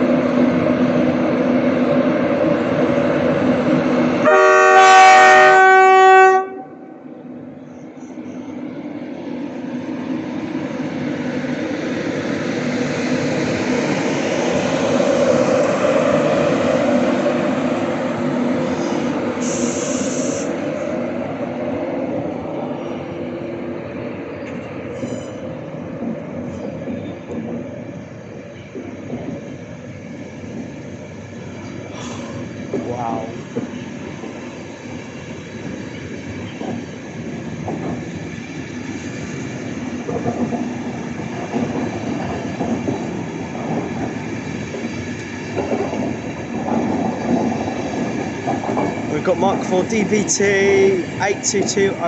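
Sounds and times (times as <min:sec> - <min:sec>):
train running noise: 0:00.0 - 0:52.0
train horn: 0:04.2 - 0:07.0
short high hiss: 0:19.4 - 0:20.6.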